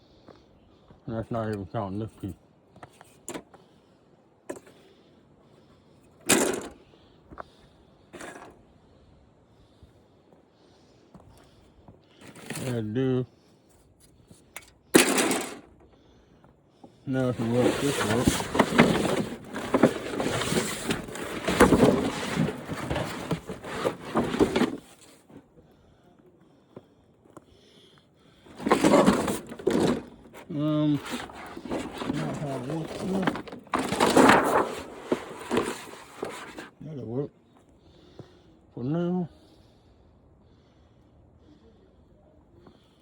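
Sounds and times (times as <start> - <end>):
parts clattering: 6.1 - 6.8, 8.2 - 8.6, 12.2 - 12.8, 14.3 - 16.0, 17.1 - 25.4, 28.4 - 36.7
scrape or rustle: 12.2 - 12.8, 17.2 - 25.4, 28.5 - 36.7.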